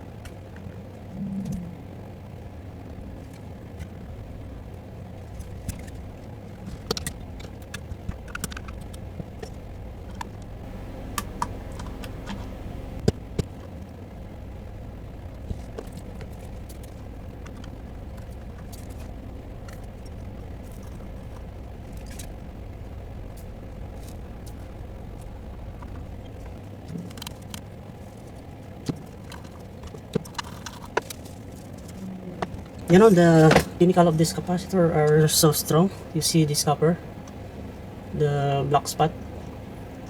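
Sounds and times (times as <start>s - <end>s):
steady low hum: 0.0s - 40.0s
small tools clicking and tapping: 5.2s - 13.8s, 23.4s - 33.8s.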